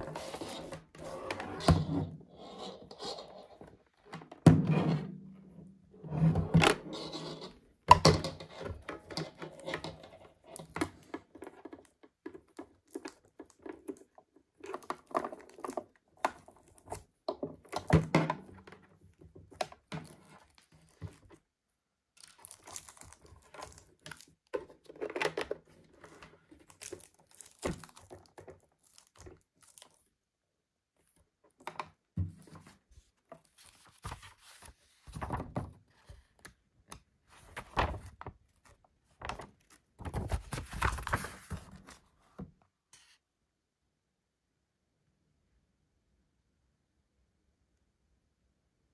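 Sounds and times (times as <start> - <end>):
plastic packaging crinkling: 22.2 - 25.2, 26.5 - 30.1.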